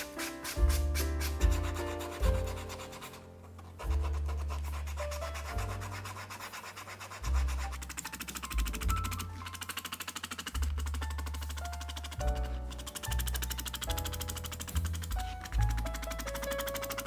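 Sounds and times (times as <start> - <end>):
background music with bass line: 0.0 - 9.7, 10.6 - 17.0
rubbing leather edge: 0.0 - 12.1.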